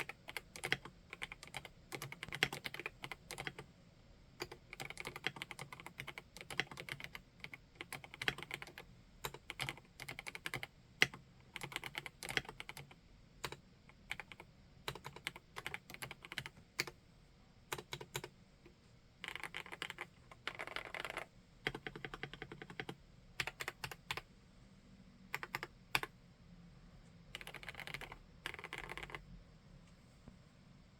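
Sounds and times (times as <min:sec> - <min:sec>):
typing on mechanical keyboard: 0:00.0 - 0:03.6, 0:04.4 - 0:17.0, 0:17.7 - 0:18.3, 0:19.2 - 0:24.2, 0:25.3 - 0:26.1, 0:27.3 - 0:29.2.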